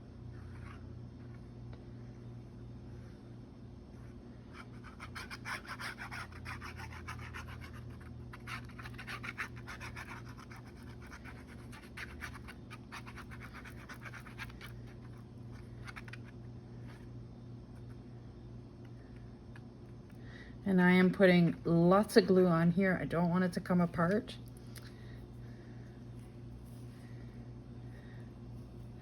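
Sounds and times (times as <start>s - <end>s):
glue nozzle scratching on page: 4.6s - 16.3s.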